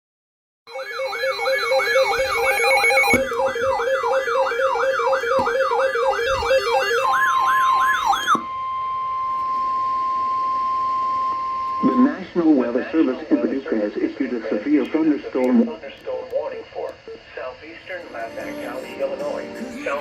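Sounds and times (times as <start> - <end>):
steady high alert tone: 0.7 - 9.2, 17.9 - 20.0
whooping electronic sirens: 0.7 - 15.0.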